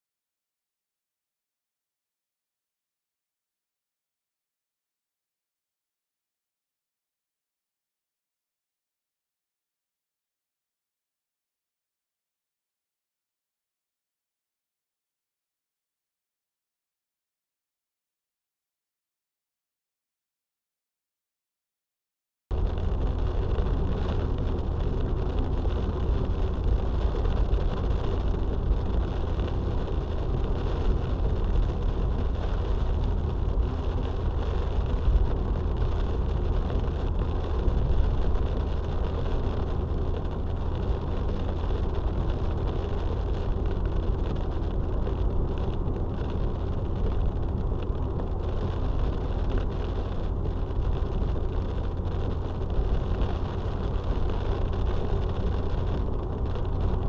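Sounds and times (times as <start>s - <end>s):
road and engine rumble inside car: 22.5s - 57.0s.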